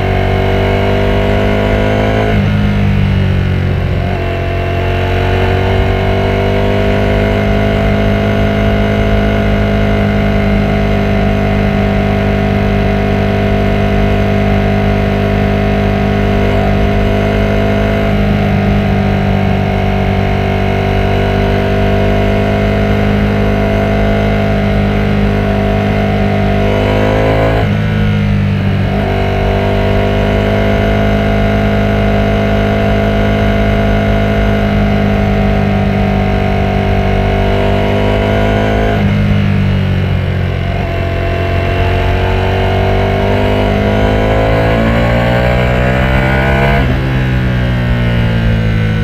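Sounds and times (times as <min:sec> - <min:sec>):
motorcycle engine pulling steadily: 0:00.0 - 0:49.0.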